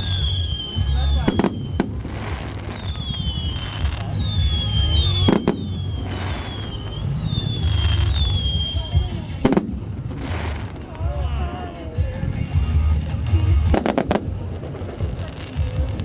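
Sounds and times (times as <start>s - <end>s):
high falling firework whistles: 0.0s - 10.8s
low rumble of firework booms: 0.0s - 16.0s
sharp firework bangs: 0.0s - 16.0s.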